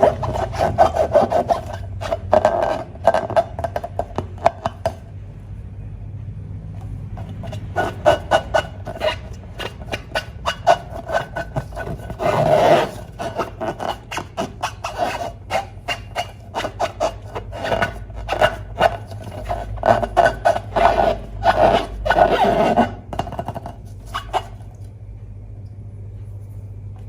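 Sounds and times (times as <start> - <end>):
slime squelching: 0.0 - 4.9, 7.2 - 22.9.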